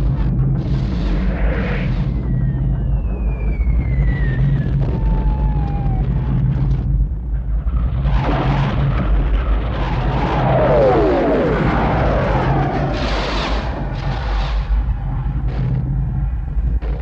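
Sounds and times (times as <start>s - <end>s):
continuous rumbling din: 0.0s - 17.0s
falling whistle: 1.6s - 6.3s.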